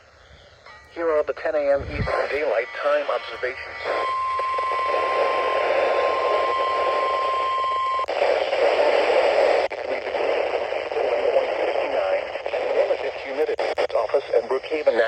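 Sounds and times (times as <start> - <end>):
radio static: 1.0 - 15.0
steady warning alarm tone: 2.2 - 8.2.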